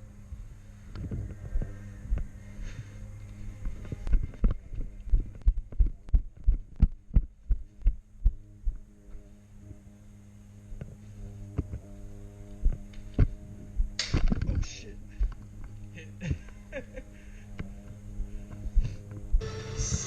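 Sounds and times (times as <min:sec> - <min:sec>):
steady low hum: 0:00.0 - 0:20.0
dull low thumps: 0:04.0 - 0:08.8.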